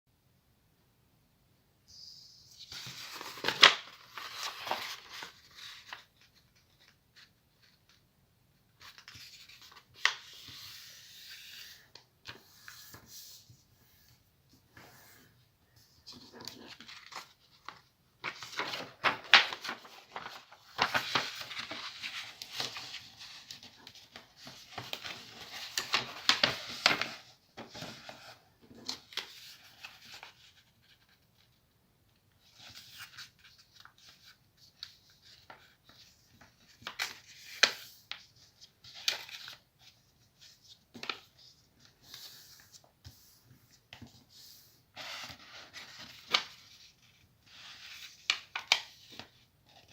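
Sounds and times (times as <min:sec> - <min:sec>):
paper rustling and crackling: 0:02.5 - 0:08.0, 0:16.0 - 0:31.3.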